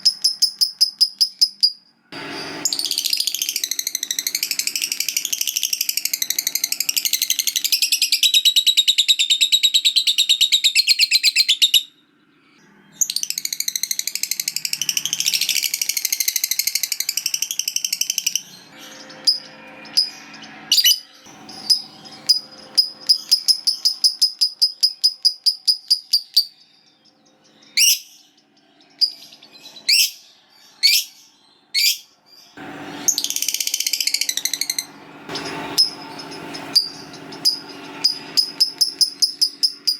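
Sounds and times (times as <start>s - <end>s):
lovebird chattering trill: 0.0s - 1.8s, 13.0s - 26.7s, 27.5s - 32.1s, 33.2s - 39.9s.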